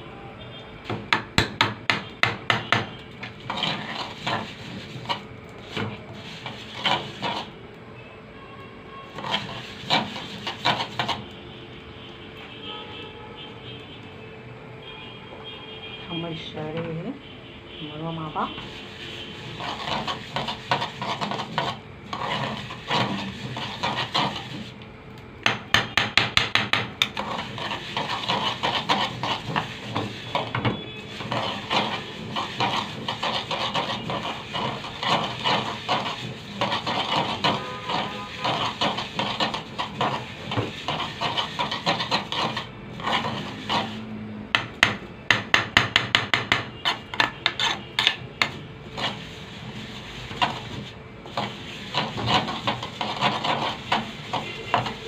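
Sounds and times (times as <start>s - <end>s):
spoon scraping pot bottom: 1.9s - 7.6s, 9.1s - 11.3s, 18.6s - 24.8s, 25.6s - 55.0s.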